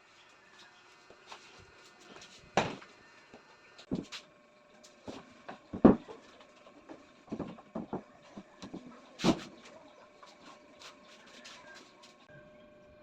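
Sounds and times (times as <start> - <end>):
wooden furniture parts knocking: 5.0 - 9.5.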